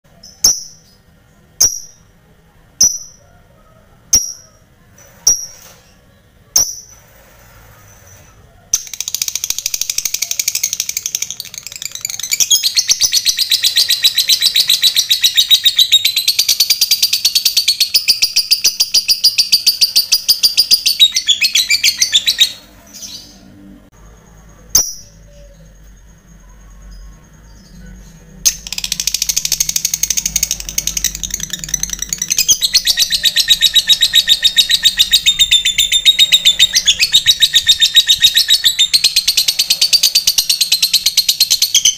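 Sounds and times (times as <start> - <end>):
lovebird rattling chatter: 8.8 - 14.7, 28.5 - 41.9
lovebird calling notes: 28.5 - 41.9.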